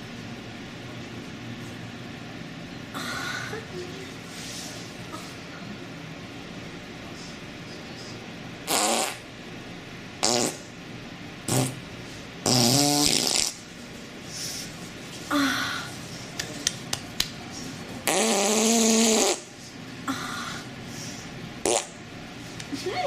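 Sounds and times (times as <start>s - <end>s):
farts: 8.7s - 9.2s, 10.2s - 10.7s, 11.5s - 11.8s, 12.4s - 13.6s, 18.0s - 19.5s, 21.6s - 22.0s.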